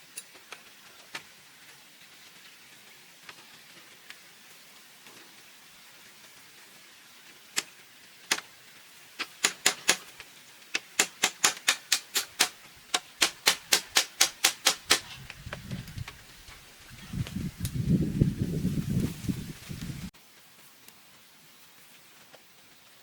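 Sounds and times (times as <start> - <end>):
tool knocking on bamboo: 9.3 - 10.1, 10.8 - 15.1.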